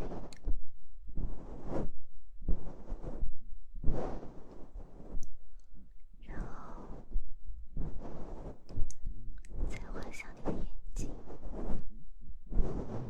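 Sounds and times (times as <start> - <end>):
tools brushing against microphone: 7.8 - 11.9, 12.5 - 13.0.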